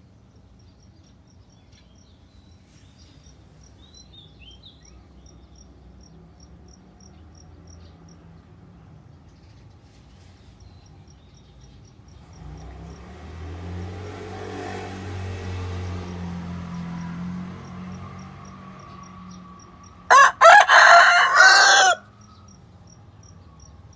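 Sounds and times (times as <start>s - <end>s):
motor vehicle passing by: 12.1s - 22.5s.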